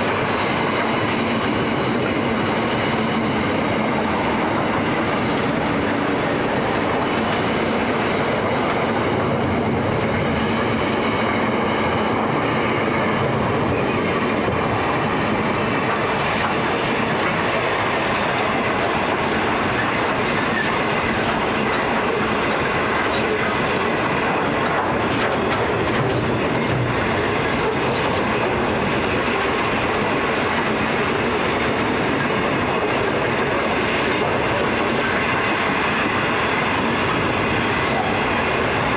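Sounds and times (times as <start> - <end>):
freight train wheels rumbling on rails: 0.0 - 38.9.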